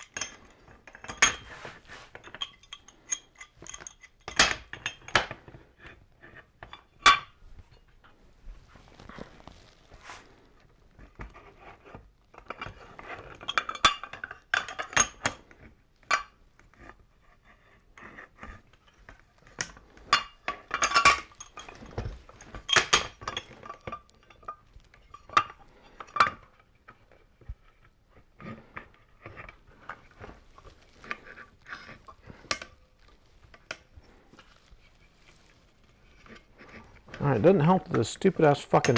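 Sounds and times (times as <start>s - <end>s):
metal tools clinking: 0.0s - 5.3s, 36.2s - 38.9s.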